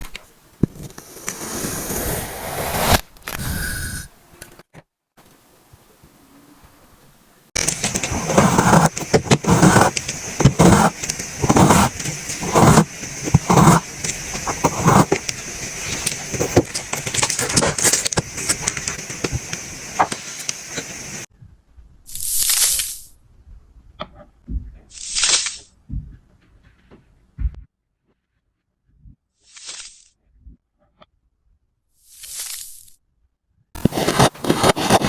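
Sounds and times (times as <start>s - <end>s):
short hissing: 1.0s - 4.2s, 7.6s - 21.3s
kinetic sand crackling: 7.6s - 21.3s, 33.8s - 35.0s
sand squishing: 7.6s - 21.3s, 33.8s - 35.0s.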